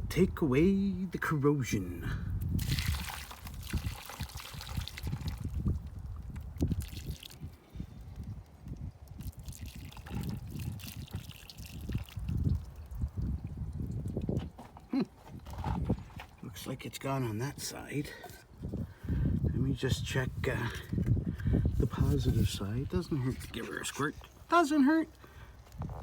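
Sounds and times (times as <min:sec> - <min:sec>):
hot water splashing and dripping: 0:02.4 - 0:14.4.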